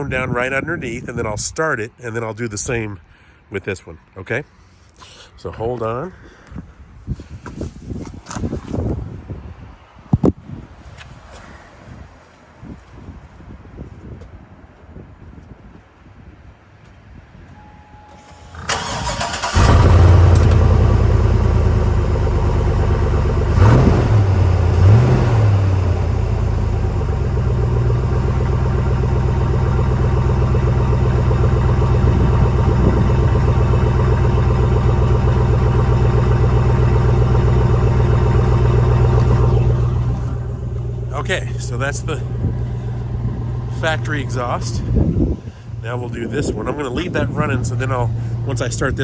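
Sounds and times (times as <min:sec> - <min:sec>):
starter motor cranking: 0:18.3 - 0:21.5
engine revving and idling: 0:18.4 - 0:49.0.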